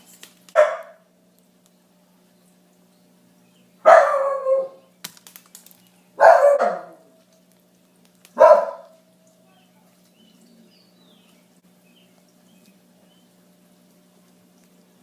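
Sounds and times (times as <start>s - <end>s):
dog barking: 0.6s - 1.0s, 3.8s - 4.8s, 6.2s - 7.1s, 8.4s - 9.0s.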